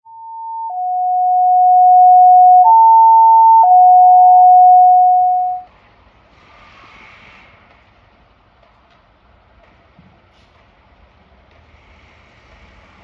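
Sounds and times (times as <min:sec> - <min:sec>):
two-tone alert tones: 0:00.4 - 0:05.7.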